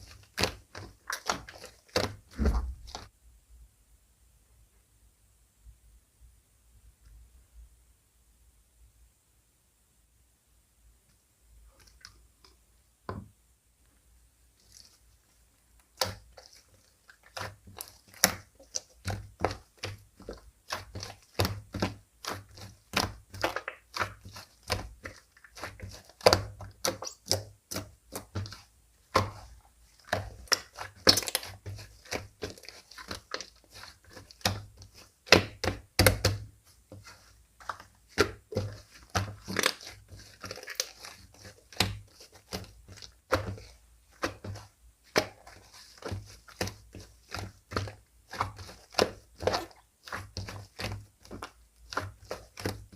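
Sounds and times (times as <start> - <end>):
sticky slime popping and crackling: 0.0 - 3.1, 15.8 - 52.9.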